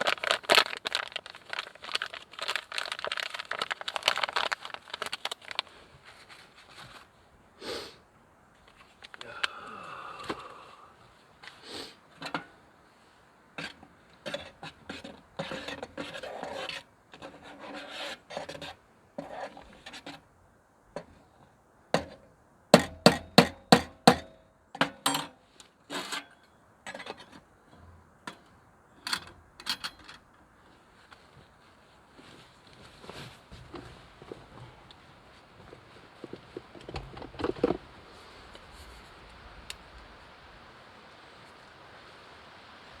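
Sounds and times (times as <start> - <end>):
scraping and rubbing: 14.9 - 20.1.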